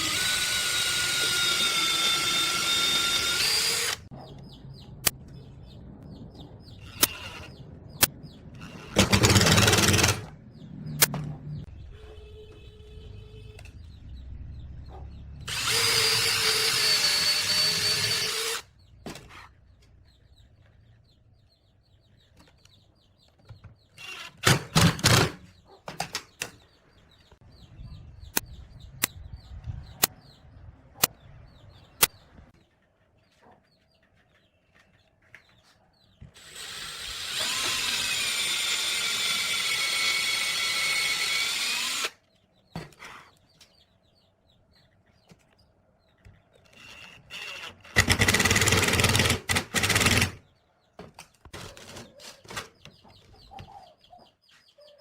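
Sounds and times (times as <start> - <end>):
power tool motor whining: 0.0 - 4.1, 15.5 - 18.6, 36.4 - 42.2.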